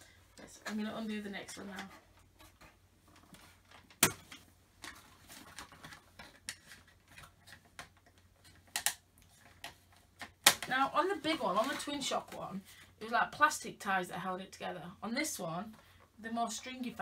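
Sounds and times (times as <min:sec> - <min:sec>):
plastic packaging clicks: 0:07.4 - 0:10.7.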